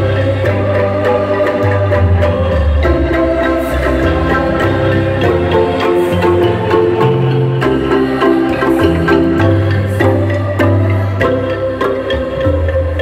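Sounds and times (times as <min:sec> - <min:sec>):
wooden xylophones playing a tune: 0:00.0 - 0:13.0.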